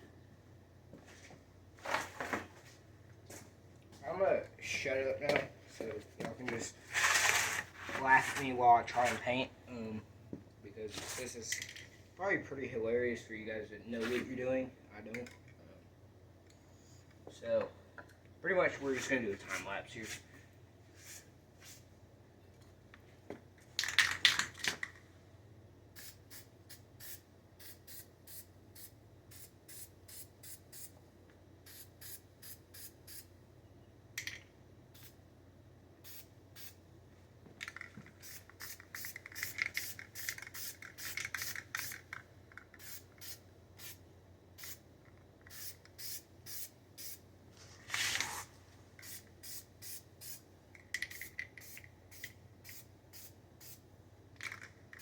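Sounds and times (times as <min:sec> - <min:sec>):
aerosol spray can hissing: 0:45.5 - 0:47.2.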